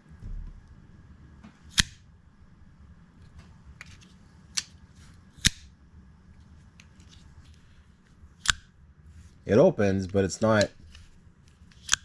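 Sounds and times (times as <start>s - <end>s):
pocket knife blade clicks: 8.4s - 8.7s.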